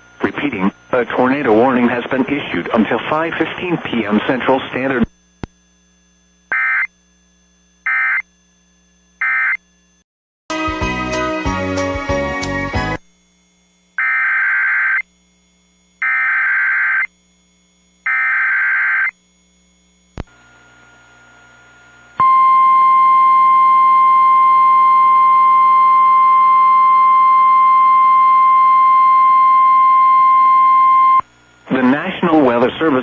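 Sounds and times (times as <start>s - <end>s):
steady warning alarm tone: 6.5s - 6.9s, 14.0s - 15.1s, 16.0s - 17.2s, 18.0s - 19.2s, 22.2s - 31.2s.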